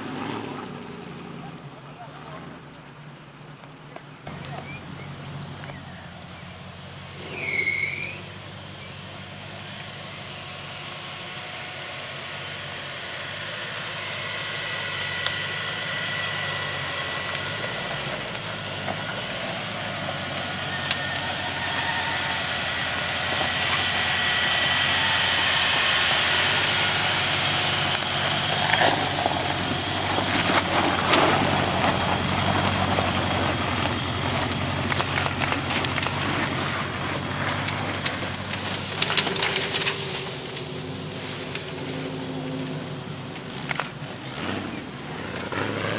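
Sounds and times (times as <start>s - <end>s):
off-road engine running: 0.0s - 45.9s.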